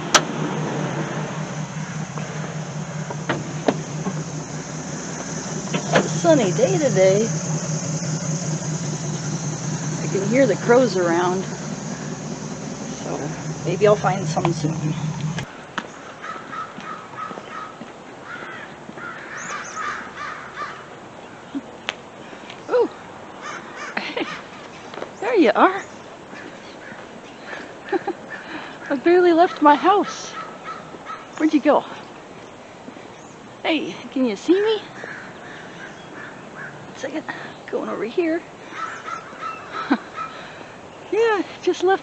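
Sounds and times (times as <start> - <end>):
steady low machine hum: 0.0 - 15.5
crows cawing: 16.2 - 20.8, 35.0 - 36.9, 38.6 - 40.6.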